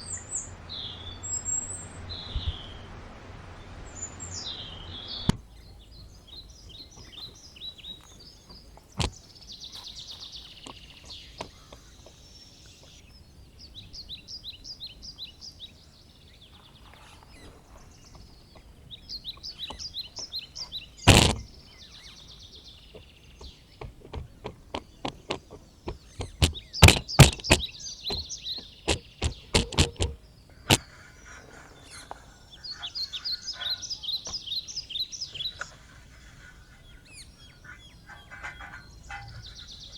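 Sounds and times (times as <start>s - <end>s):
small birds chirping and trilling: 0.0s - 39.9s
sharp knocks or taps: 8.5s - 9.2s, 21.1s - 21.5s, 22.9s - 30.8s.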